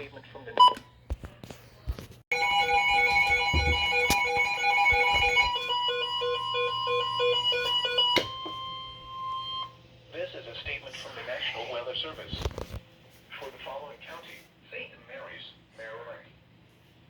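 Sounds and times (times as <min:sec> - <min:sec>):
two-tone attention signal: 0:02.3 - 0:09.8.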